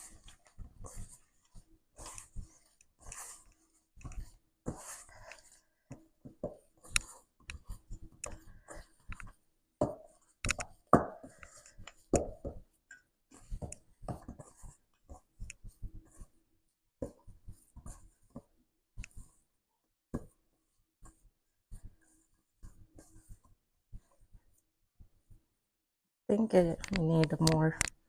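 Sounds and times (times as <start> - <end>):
hands kneading sticky dough: 0.0 - 25.6.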